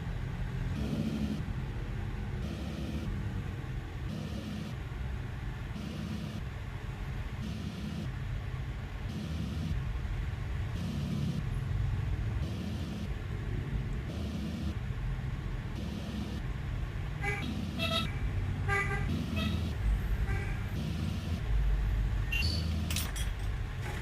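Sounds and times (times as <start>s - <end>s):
vehicle horn toots: 17.2s - 18.1s.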